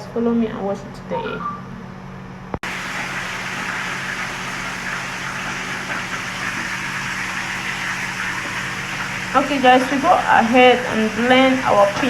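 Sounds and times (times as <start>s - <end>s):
fish sizzling in hot oil: 2.6s - 12.0s.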